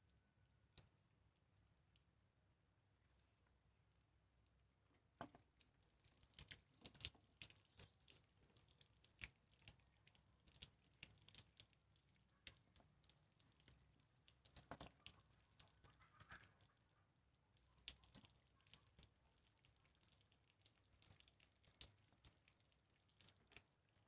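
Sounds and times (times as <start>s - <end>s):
faint small clicks and taps: 12.3s - 16.6s.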